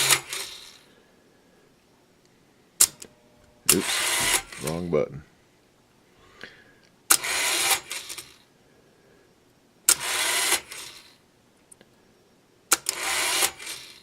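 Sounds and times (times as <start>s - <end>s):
radio tuning mechanism click: 2.8s - 4.9s
tuning mechanism whirring: 2.9s - 5.2s.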